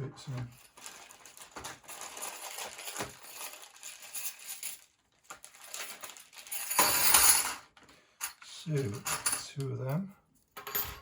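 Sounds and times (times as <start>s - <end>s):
small metal parts clinking: 0.5s - 7.6s.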